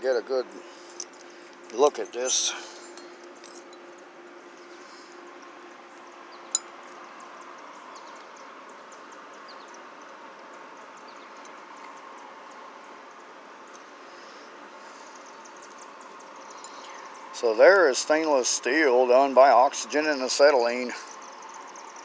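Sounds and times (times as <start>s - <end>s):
faint outdoor background: 0.0s - 22.0s.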